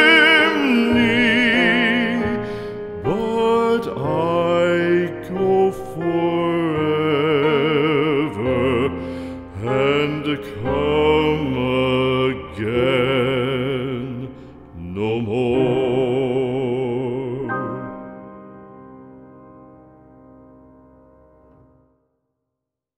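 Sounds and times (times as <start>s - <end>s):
classical singing with vibrato: 0.0s - 18.2s.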